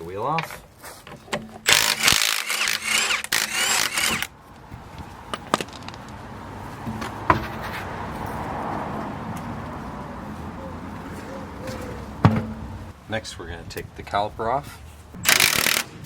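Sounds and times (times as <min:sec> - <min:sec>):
power tool spinning lug nuts: 0:01.6 - 0:04.3, 0:15.2 - 0:16.0.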